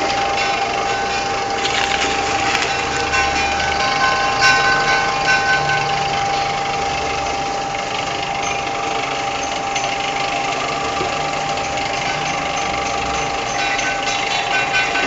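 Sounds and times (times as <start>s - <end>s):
machine whirring steadily: 0.0s - 15.0s.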